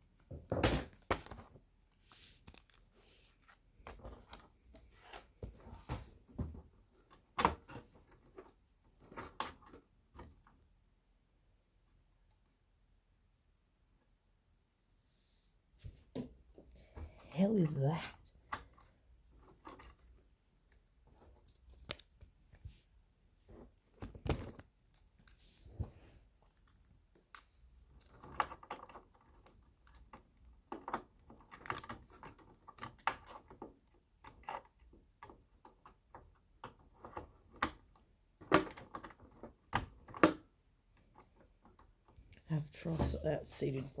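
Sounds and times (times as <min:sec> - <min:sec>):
hands handling computer parts: 0:00.0 - 0:10.7, 0:18.5 - 0:40.4.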